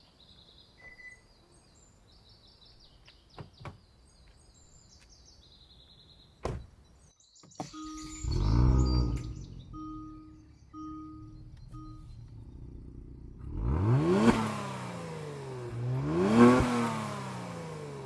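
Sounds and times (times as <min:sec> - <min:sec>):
birds chirping: 0:00.0 - 0:18.0
thump: 0:06.4 - 0:06.7
warning chime beeps: 0:07.6 - 0:12.8
car engine cranking and starting: 0:07.6 - 0:18.0.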